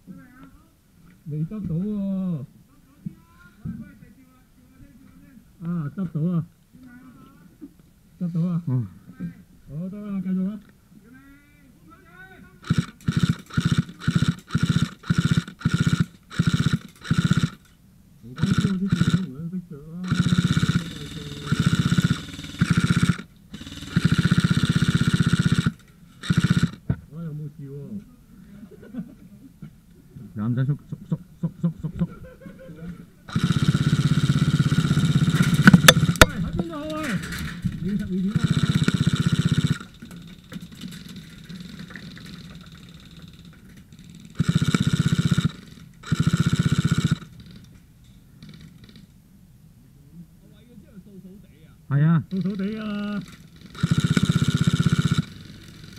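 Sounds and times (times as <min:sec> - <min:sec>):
airsoft guns firing bursts: 0:12.6 - 0:17.6, 0:18.4 - 0:19.3, 0:20.0 - 0:26.9, 0:33.3 - 0:47.6, 0:52.3 - 0:55.9.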